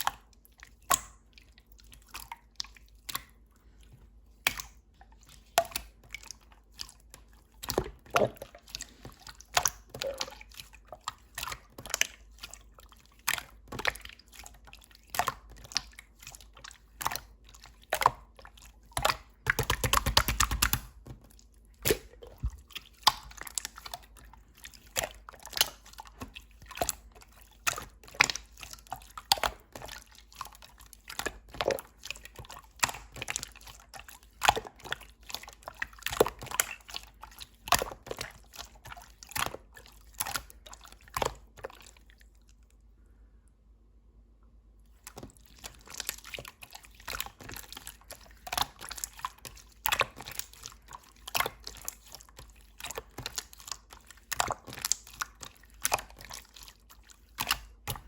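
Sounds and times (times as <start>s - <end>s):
slime squeezed by hand: 9.3s - 10.6s.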